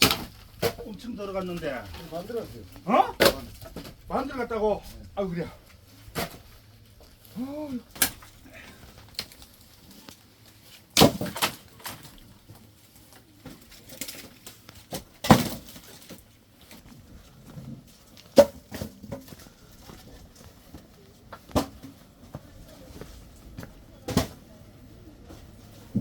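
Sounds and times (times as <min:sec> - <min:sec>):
firewood logs knocking together: 0:00.0 - 0:04.2, 0:07.8 - 0:09.7, 0:11.0 - 0:12.6, 0:13.4 - 0:16.9, 0:17.7 - 0:22.0.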